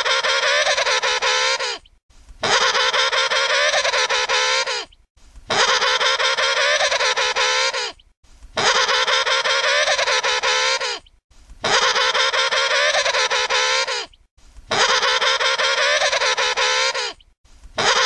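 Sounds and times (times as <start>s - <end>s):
penguin trumpeting calls: 2.4s - 4.9s, 5.5s - 8.0s, 8.6s - 11.0s, 11.6s - 14.1s, 14.7s - 17.2s, 17.8s - 18.0s.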